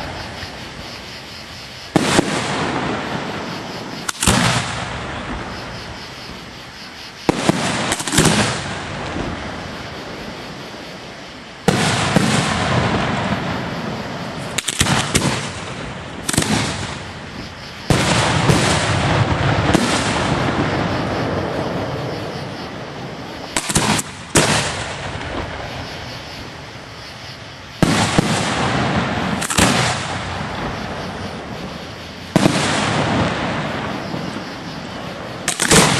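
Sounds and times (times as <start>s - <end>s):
firework shells bursting: 1.9s - 5.6s, 7.3s - 9.4s, 14.3s - 21.7s, 23.4s - 26.0s, 27.8s - 31.6s, 32.3s - 35.9s.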